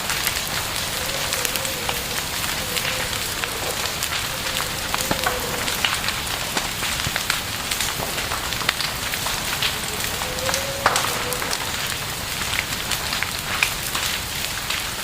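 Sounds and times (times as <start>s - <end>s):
campfire crackling and popping: 0.0s - 15.0s
steady fire hiss: 0.0s - 15.0s.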